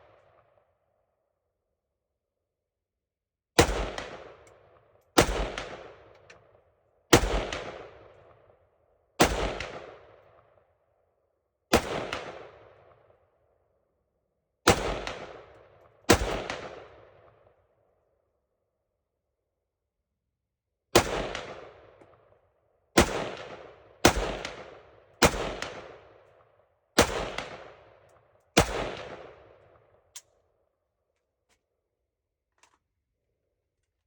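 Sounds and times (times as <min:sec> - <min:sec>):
rifle shots with echo: 0:03.6 - 0:08.6, 0:09.2 - 0:10.6, 0:11.7 - 0:13.2, 0:14.6 - 0:17.6, 0:20.9 - 0:22.4, 0:23.0 - 0:30.2.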